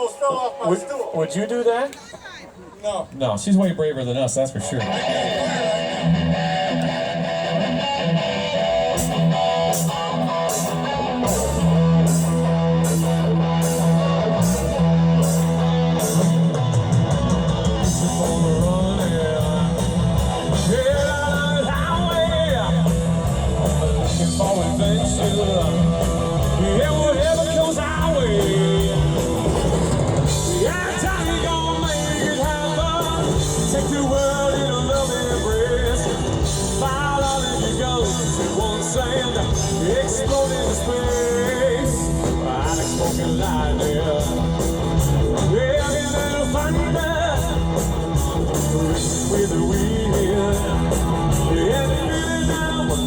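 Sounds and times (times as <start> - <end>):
live rock band playing: 3.6 - 53.0
person singing: 17.3 - 23.4, 24.0 - 53.0.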